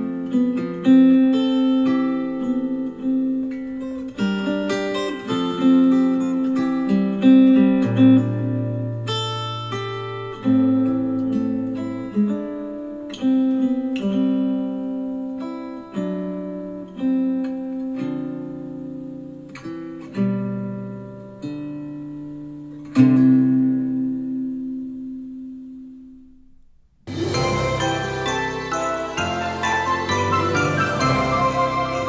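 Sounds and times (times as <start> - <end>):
acoustic guitar chords over speaker: 0.0 - 32.0.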